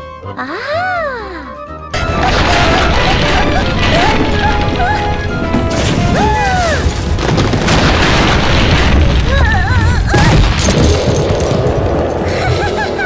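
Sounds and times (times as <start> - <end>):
cartoon background music: 0.0 - 7.1
booming crashing sound effect: 2.0 - 13.0.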